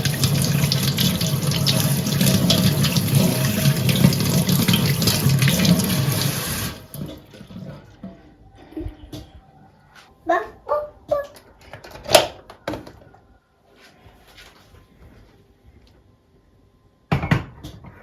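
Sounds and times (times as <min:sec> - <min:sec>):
tap water running into sink: 0:00.0 - 0:07.7.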